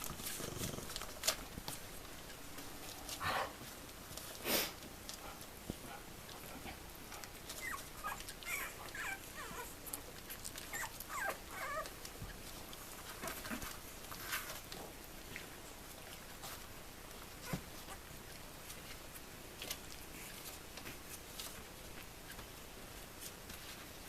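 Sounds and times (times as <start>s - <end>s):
puppies squeaking and whimpering: 7.5s - 12.5s.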